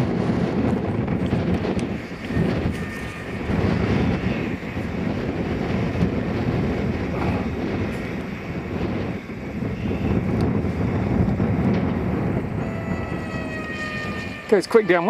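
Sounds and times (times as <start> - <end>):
gusty wind buffeting microphone: 0.0 - 15.0.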